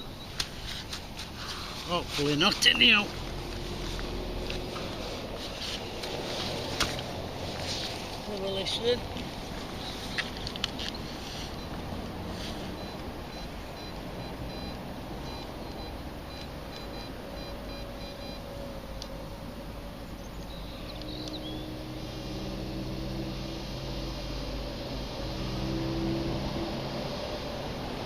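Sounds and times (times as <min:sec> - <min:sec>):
low steady drone: 0:10.6 - 0:28.0
metal detector beeps: 0:10.8 - 0:11.9, 0:12.6 - 0:18.5.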